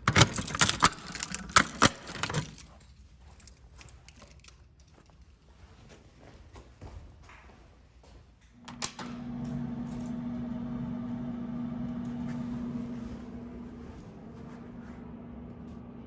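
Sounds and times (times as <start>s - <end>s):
electrical hum from speakers: 8.6s - 16.0s.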